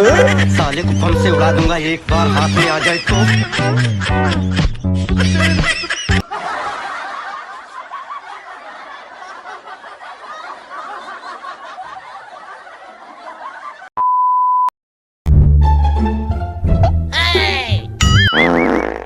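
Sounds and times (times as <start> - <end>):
crowd laughing: 0.0 - 13.9.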